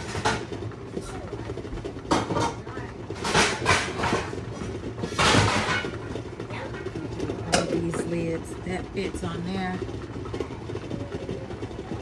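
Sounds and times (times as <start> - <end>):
metal pot lids clanking: 5.0 - 6.1, 7.4 - 8.2.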